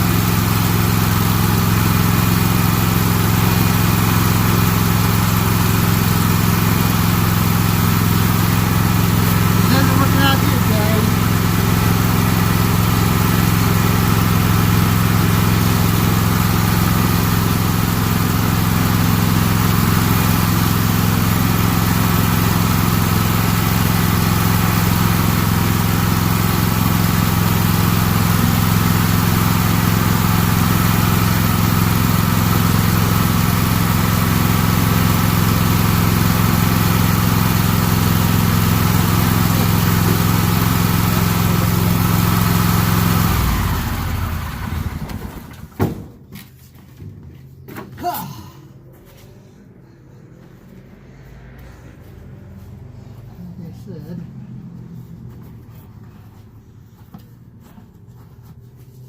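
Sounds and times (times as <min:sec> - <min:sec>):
mower engine running steadily: 0:00.0 - 0:47.0.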